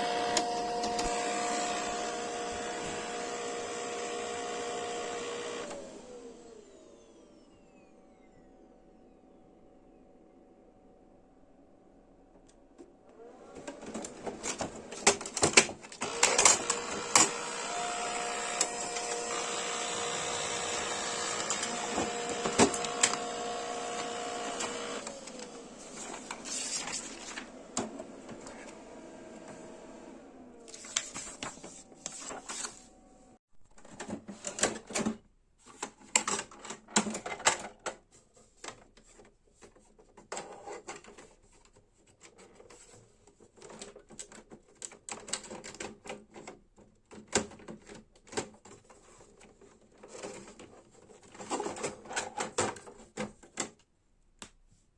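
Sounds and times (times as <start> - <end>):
printer motor whirring: 0.0 - 8.5, 15.9 - 32.8.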